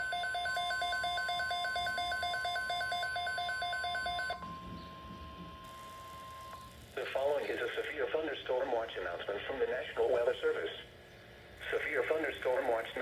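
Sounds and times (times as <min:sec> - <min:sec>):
rapid electronic beeping: 0:00.0 - 0:08.0
steady warning alarm tone: 0:00.0 - 0:13.0.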